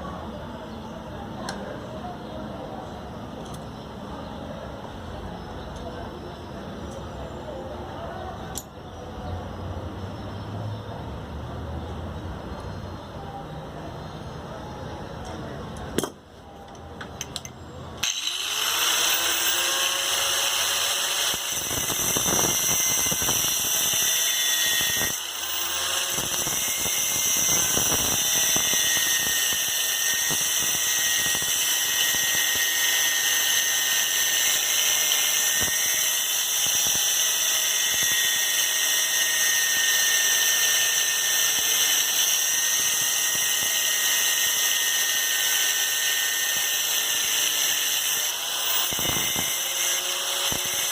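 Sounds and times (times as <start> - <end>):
power tool whining: 18.0 - 50.9.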